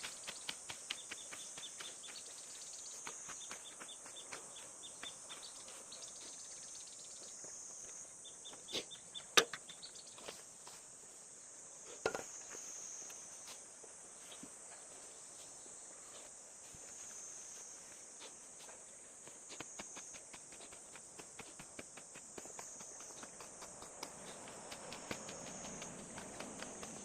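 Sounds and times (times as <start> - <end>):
insect drone: 0.0 - 27.0
small clicks and ticks: 19.5 - 27.0.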